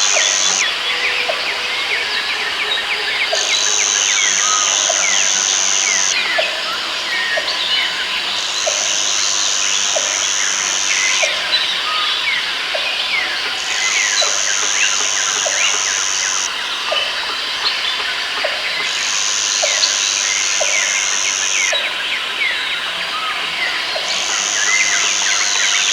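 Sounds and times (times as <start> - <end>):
high insect buzz: 0.0 - 0.7, 3.3 - 6.2, 8.4 - 11.5, 13.6 - 16.5, 18.8 - 21.8, 24.1 - 25.9
birds chirping and whistling: 0.0 - 6.4.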